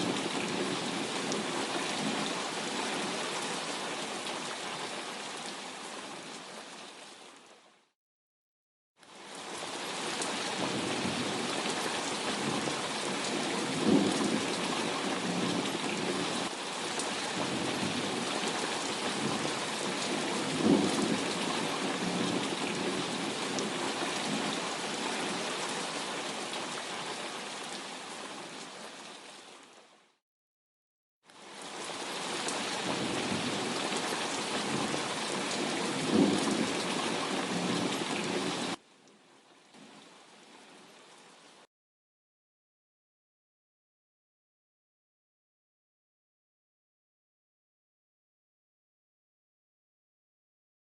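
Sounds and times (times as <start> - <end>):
heavy rain: 0.0 - 7.9, 9.0 - 30.2, 31.3 - 41.7
low thunder claps: 20.1 - 23.6.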